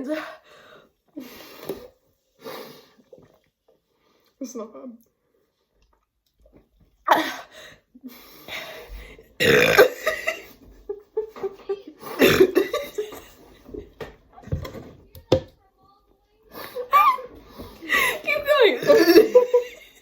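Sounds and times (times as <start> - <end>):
people burping loudly: 9.4 - 10.4, 12.2 - 12.9.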